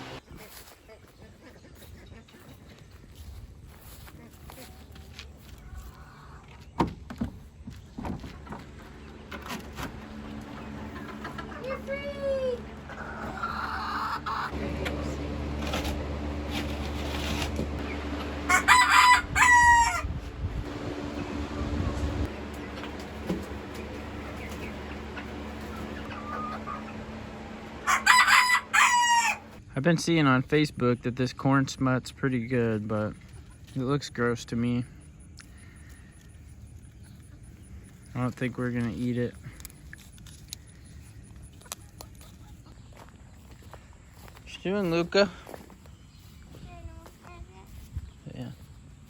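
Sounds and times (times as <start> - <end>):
chickens clucking faintly: 7.4 - 15.0, 22.2 - 29.6
rooster crowing: 18.4 - 20.2, 27.8 - 29.6.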